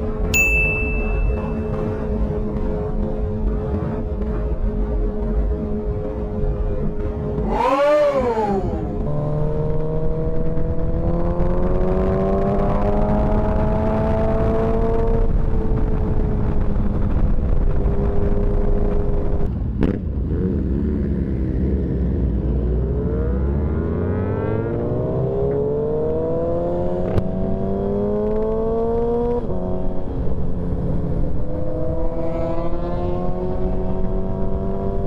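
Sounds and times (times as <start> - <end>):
motorcycle engine accelerating: 0.0 - 35.0
wind rumble: 1.0 - 23.9.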